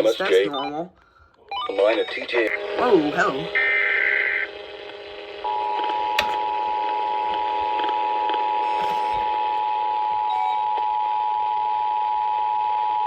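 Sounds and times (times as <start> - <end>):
two-tone alarm: 1.5 - 13.0
digital data burst: 8.6 - 9.5.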